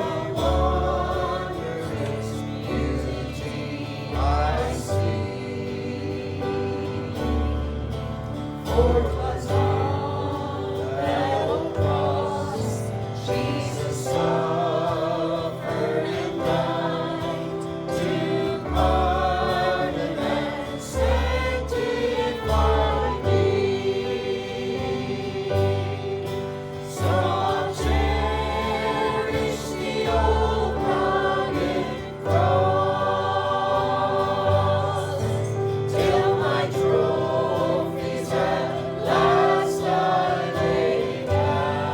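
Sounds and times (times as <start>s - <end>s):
group singing a gospel hymn: 0.0s - 41.9s
organ-like chord: 12.8s - 41.9s.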